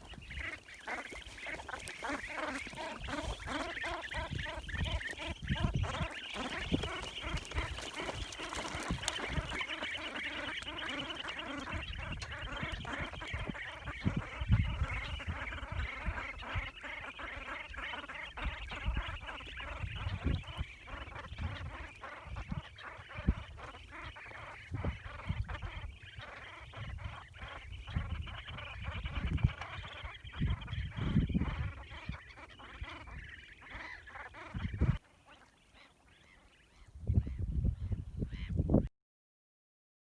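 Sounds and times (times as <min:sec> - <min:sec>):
young ducks chattering: 0:00.0 - 0:38.6.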